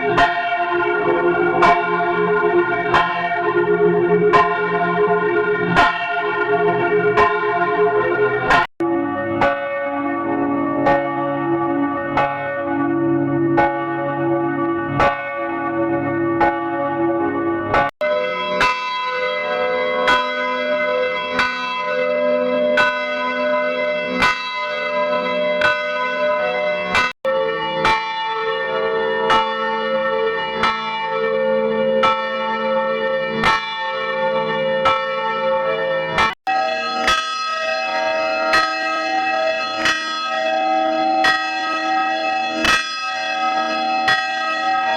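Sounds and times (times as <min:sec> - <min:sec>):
church bell tolling: 0:00.0 - 0:44.9.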